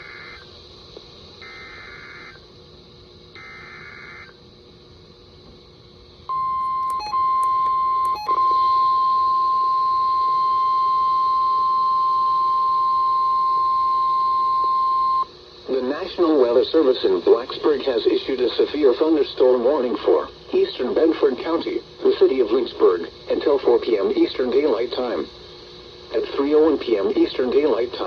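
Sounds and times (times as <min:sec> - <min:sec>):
loud steady warning alarm tone: 0:00.0 - 0:00.5, 0:01.4 - 0:02.4, 0:03.3 - 0:04.4, 0:06.3 - 0:15.3
warbling data tones: 0:01.4 - 0:02.4, 0:06.3 - 0:13.3.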